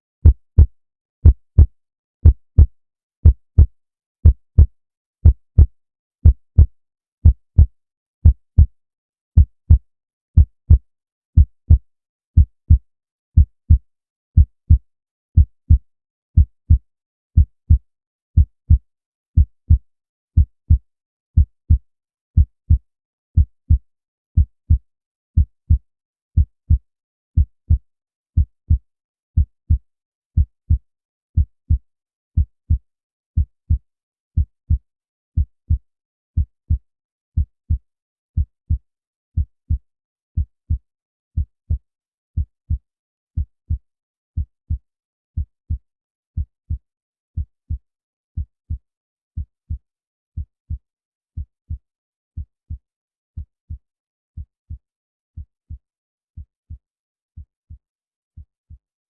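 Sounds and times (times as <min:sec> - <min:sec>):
heartbeat thumps: 0:00.2 - 0:08.7.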